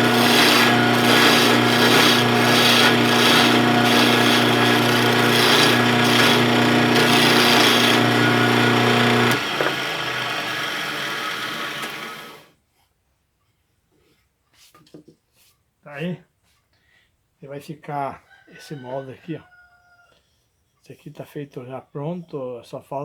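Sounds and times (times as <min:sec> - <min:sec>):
hand tool scraping wood: 0:00.0 - 0:12.4
lathe motor hum: 0:00.0 - 0:12.5.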